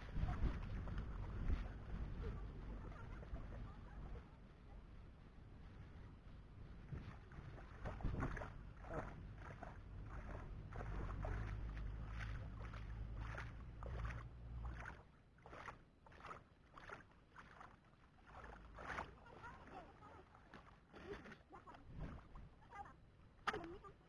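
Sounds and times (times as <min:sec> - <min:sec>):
water splashing and sloshing: 0:00.0 - 0:04.4, 0:05.6 - 0:24.0
low rumble: 0:00.0 - 0:15.0.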